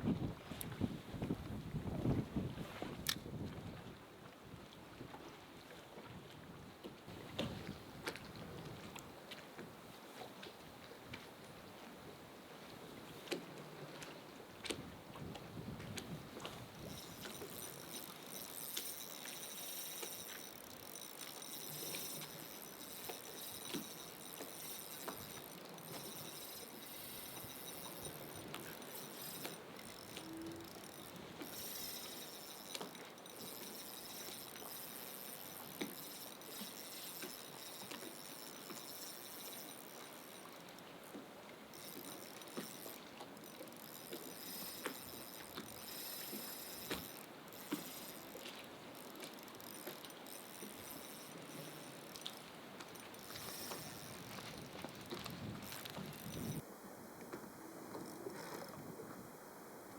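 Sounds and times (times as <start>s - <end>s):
high-pitched insect trill: 16.8s - 40.8s, 41.7s - 56.6s.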